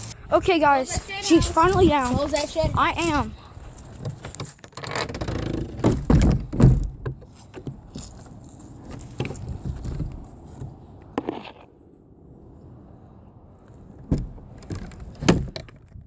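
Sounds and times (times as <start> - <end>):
shed door scraping and rattling: 3.9 - 8.0, 14.0 - 15.9
heavy door thumps: 5.0 - 7.2.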